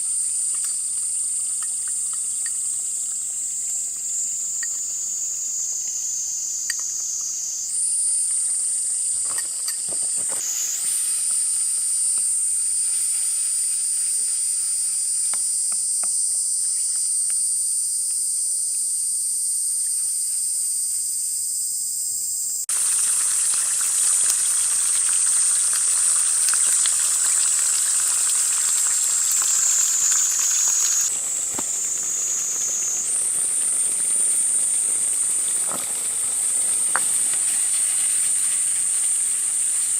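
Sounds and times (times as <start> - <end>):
insects trilling: 0.0 - 39.9
food sizzling in a skillet: 7.2 - 15.6, 22.7 - 39.9.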